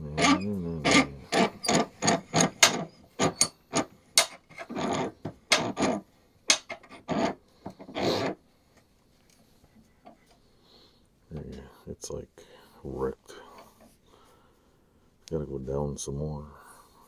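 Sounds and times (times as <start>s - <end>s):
file rasping on metal: 0.0s - 8.4s.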